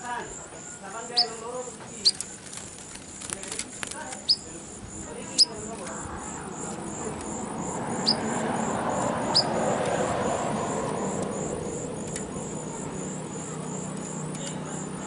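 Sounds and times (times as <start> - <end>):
high bird chirps: 1.0 - 1.4, 4.2 - 4.5, 5.2 - 6.4, 7.8 - 8.4, 9.0 - 9.8
vehicle passing by: 5.0 - 15.0.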